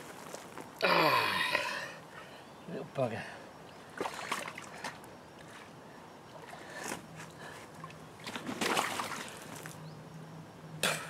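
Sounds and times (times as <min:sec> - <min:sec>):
water splashing and sloshing: 0:03.7 - 0:09.8.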